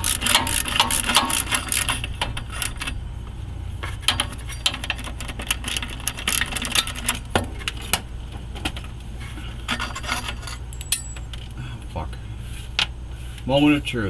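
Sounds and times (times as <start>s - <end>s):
steady low hum: 0.0s - 14.0s
metal tools clinking and scraping: 3.8s - 8.0s, 9.4s - 11.5s.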